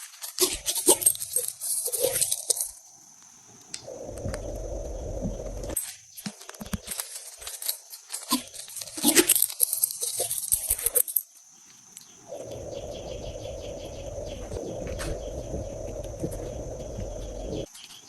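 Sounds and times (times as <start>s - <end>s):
faint ticks: 3.1s - 7.1s, 10.8s - 17.7s
low rumble: 4.0s - 5.8s, 12.3s - 17.7s.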